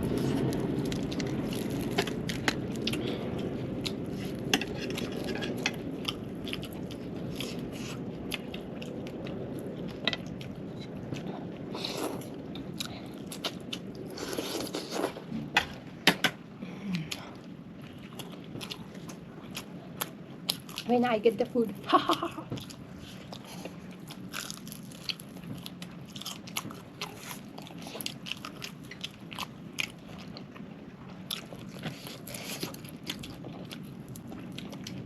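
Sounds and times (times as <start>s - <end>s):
chewing crunchy food: 0.0s - 15.4s, 17.0s - 21.0s, 21.6s - 35.0s.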